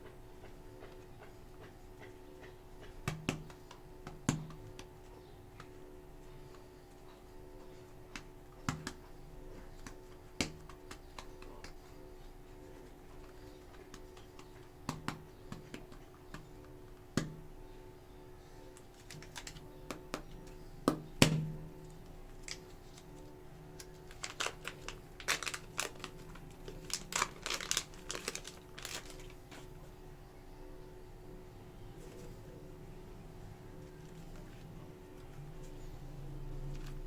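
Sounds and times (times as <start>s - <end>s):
plastic tubs tapping and clicking: 0.0s - 5.0s, 8.1s - 11.8s, 13.2s - 17.5s
packaging crinkling: 18.9s - 19.7s, 22.4s - 29.7s.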